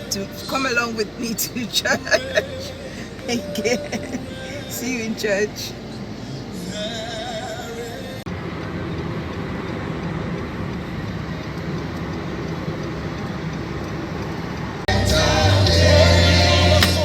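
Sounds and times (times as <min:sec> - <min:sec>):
gospel music with singing: 0:00.0 - 0:08.3, 0:14.9 - 0:17.0
car road and engine rumble: 0:00.0 - 0:17.0.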